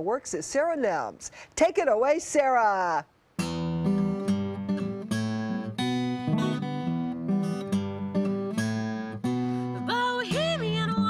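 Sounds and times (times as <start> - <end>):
acoustic guitar strumming: 3.4 - 11.0.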